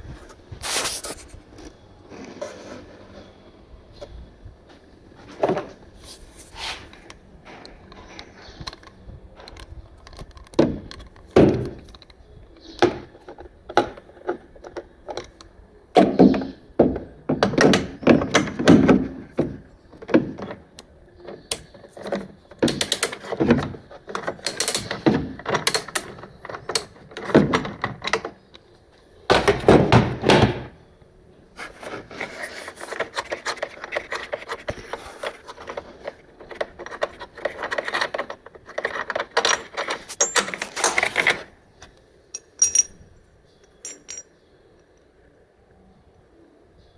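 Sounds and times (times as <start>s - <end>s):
rustling and scraping: 0.0s - 3.4s, 4.7s - 10.4s, 31.5s - 44.2s
objects knocking and clattering: 29.3s - 30.8s, 31.8s - 41.5s, 42.4s - 43.1s, 43.7s - 44.3s.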